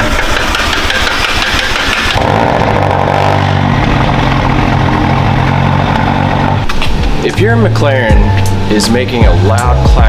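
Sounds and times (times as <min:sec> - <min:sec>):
loud clacking from engine: 0:00.0 - 0:07.4
car engine running: 0:00.0 - 0:10.0.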